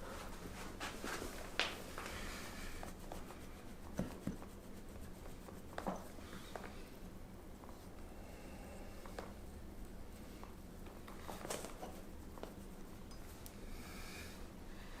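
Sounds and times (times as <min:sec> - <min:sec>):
quiet handling rustle: 0:10.1 - 0:13.6.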